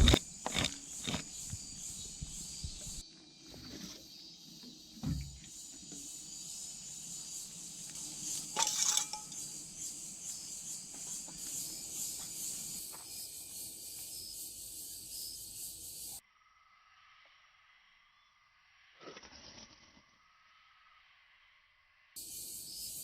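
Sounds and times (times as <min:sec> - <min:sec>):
scraping and rubbing: 0:00.0 - 0:03.0, 0:08.0 - 0:09.8.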